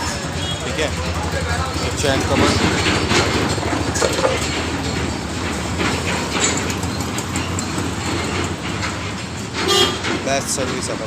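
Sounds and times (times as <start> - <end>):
rattling clatter: 0.2 - 11.0.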